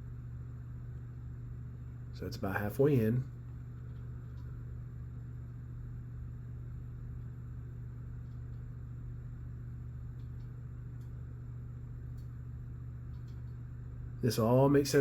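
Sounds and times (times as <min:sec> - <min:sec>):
steady low hum: 0:00.0 - 0:15.0
faint light clicks: 0:12.0 - 0:12.4, 0:13.0 - 0:13.7.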